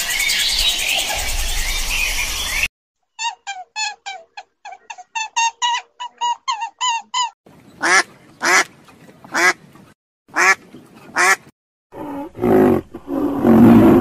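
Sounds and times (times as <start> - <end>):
high squeaky animal calls: 3.2 - 8.0
harsh quack-like animal calls: 10.3 - 10.6.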